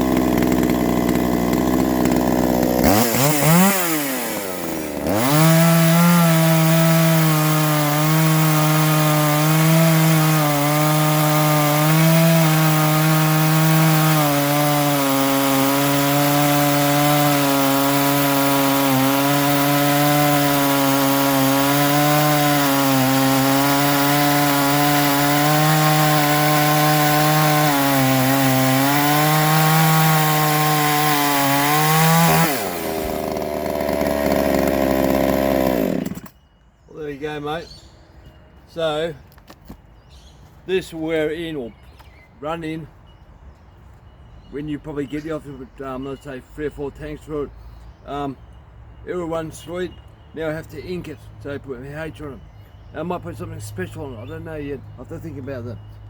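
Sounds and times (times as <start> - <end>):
chainsaw cutting wood: 0.0 - 36.4.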